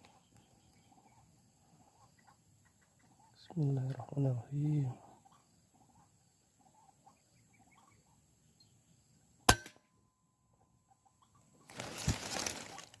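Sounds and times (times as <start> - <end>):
rustling noise: 11.6 - 13.0.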